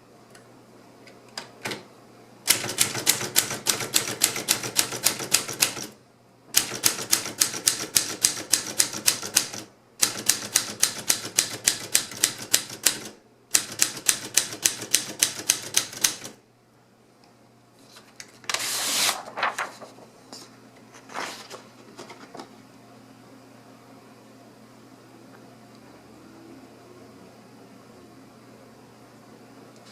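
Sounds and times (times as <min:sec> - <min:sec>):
typewriter keystrokes: 0:02.5 - 0:06.0, 0:06.6 - 0:16.4.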